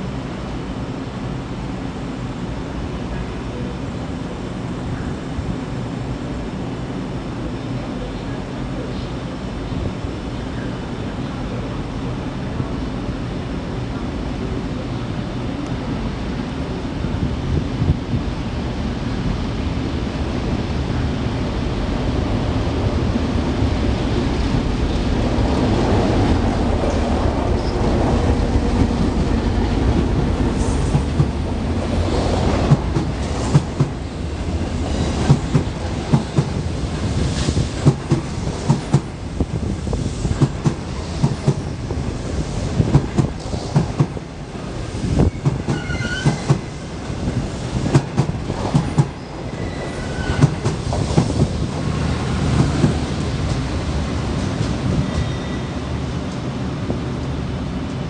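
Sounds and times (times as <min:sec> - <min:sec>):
train rumble: 0:00.0 - 0:58.0
wheel squeals: 0:45.3 - 0:46.5, 0:49.2 - 0:50.6.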